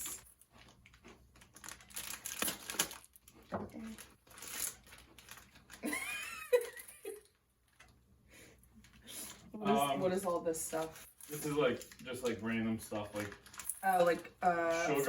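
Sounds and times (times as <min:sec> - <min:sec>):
plastic packets crinkling: 0:00.0 - 0:07.2, 0:10.7 - 0:15.0.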